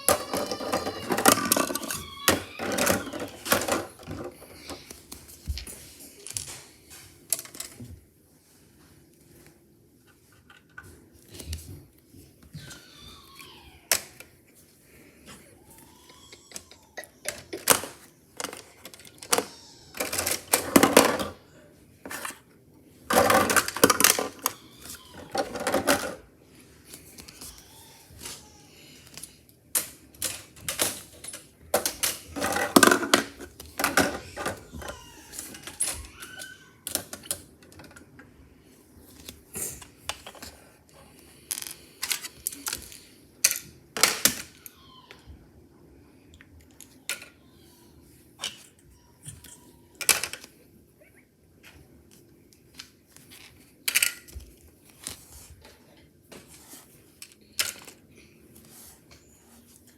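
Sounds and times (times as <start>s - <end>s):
plastic bricks clicking and clattering: 0.0s - 4.4s, 23.1s - 24.6s, 25.2s - 26.2s, 29.8s - 35.0s.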